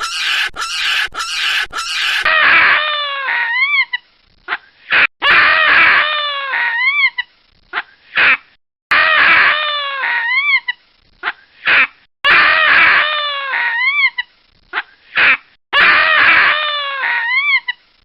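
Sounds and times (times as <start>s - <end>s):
baboon cries and yelps: 0.0s - 4.0s, 4.9s - 7.3s, 8.9s - 10.8s, 11.7s - 14.3s, 15.2s - 17.8s.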